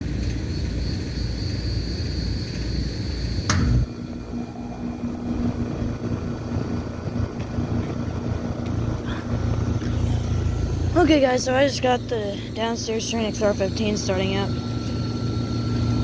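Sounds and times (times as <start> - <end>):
air conditioner humming: 0.0 - 16.0
sharp click: 3.5 - 3.8.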